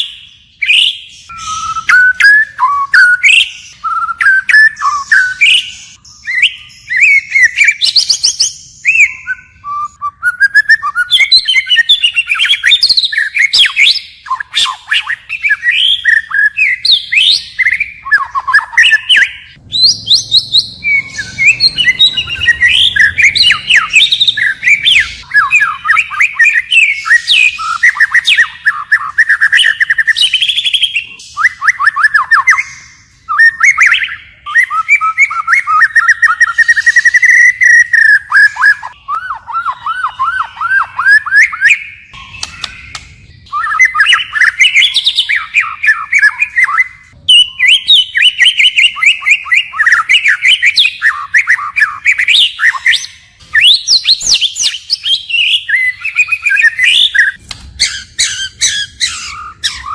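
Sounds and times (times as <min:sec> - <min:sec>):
bird singing whistled phrases: 0:00.0 - 0:59.9.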